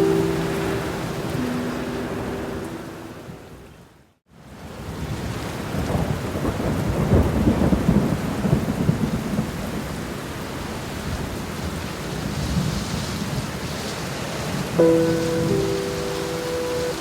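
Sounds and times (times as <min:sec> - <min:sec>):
steady rain: 0:00.0 - 0:17.0
low rumble of thunder: 0:05.8 - 0:09.9.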